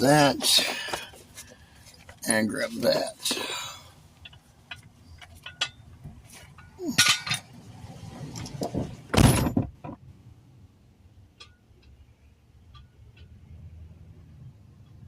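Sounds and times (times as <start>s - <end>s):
tools clinking and knocking: 4.2s - 7.5s
clattering bangs: 8.7s - 9.9s.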